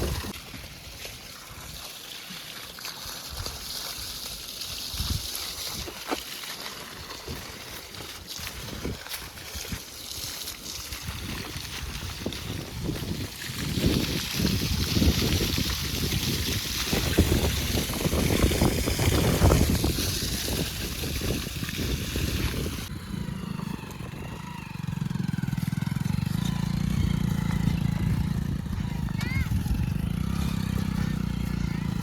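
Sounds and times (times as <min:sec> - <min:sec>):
water splashing: 0:00.0 - 0:22.9
motorcycle engine running: 0:22.4 - 0:32.0.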